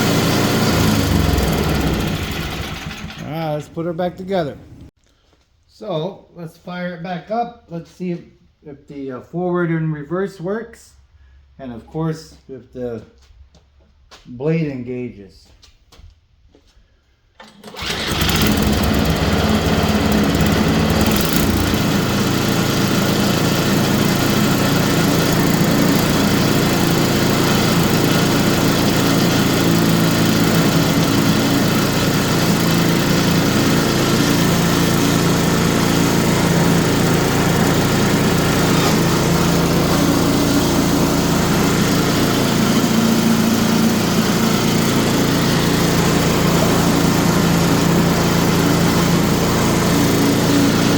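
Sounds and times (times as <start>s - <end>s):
small engine starting and running: 0.0s - 4.9s, 17.4s - 50.9s.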